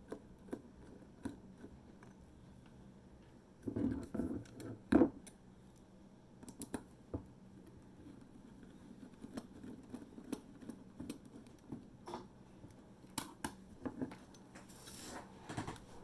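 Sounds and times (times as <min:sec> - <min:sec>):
small clicks and taps of tools: 0:04.0 - 0:07.3, 0:09.2 - 0:14.7
scraping rustle: 0:14.6 - 0:16.0.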